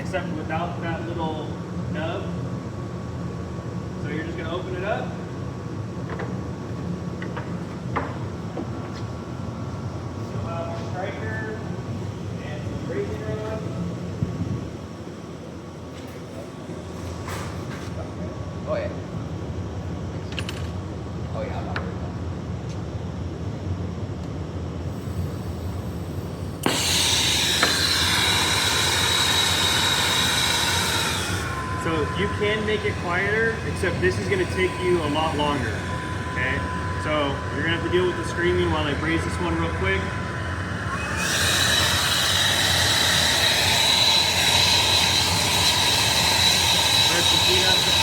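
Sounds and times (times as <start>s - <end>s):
torch flame hissing and whistling: 24.9s - 48.0s.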